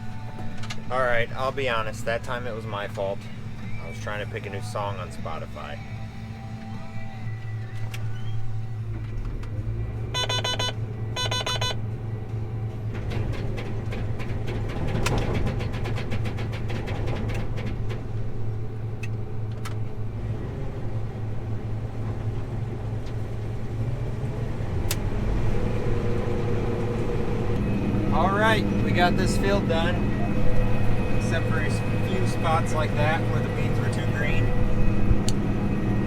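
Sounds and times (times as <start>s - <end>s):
combine harvester engine drone: 0.0s - 36.0s
rapid beeping: 10.1s - 11.8s.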